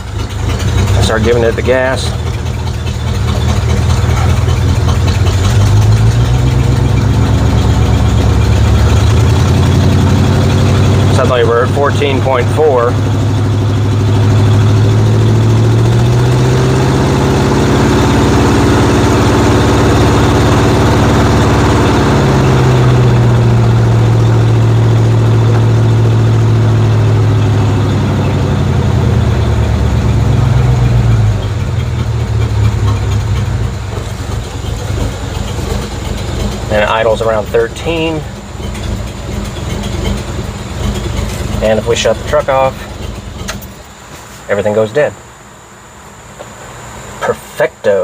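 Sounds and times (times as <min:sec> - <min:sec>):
engine running above idle: 0:00.0 - 0:48.0.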